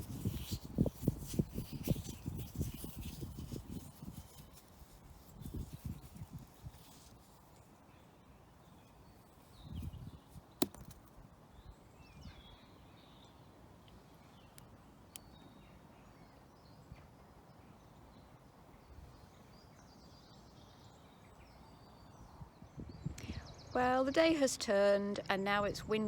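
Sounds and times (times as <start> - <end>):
wind rumbling on microphone: 0.0 - 7.4, 9.5 - 12.6, 21.9 - 24.4
faint bird chirps: 11.5 - 24.2.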